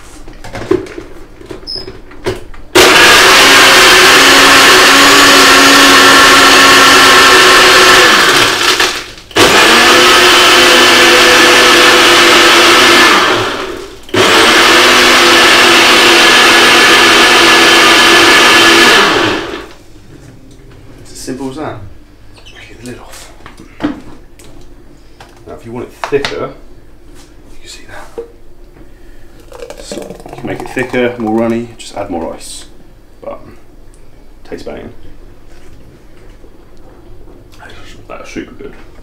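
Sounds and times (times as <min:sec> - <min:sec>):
blender crushing ice: 0:02.8 - 0:19.8.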